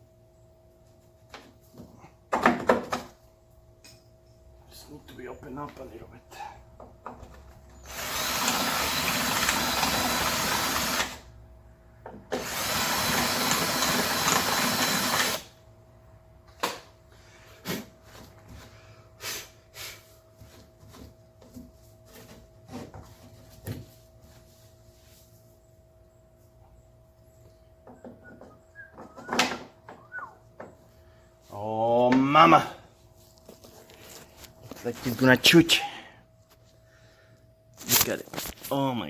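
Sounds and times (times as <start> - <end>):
power drill running: 7.8 - 11.2, 12.3 - 15.5.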